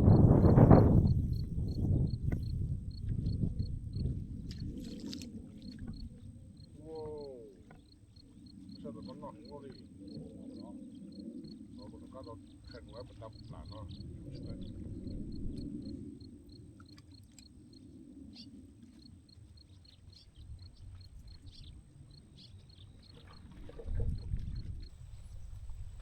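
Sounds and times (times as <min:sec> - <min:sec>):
low rumbling noise: 0:00.0 - 0:04.4.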